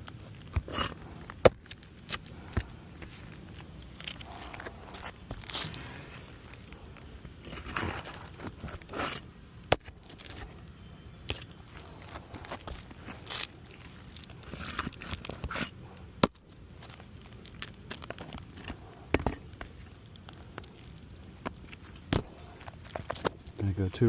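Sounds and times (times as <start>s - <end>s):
roof shingles tearing and scraping: 11.6s - 23.5s.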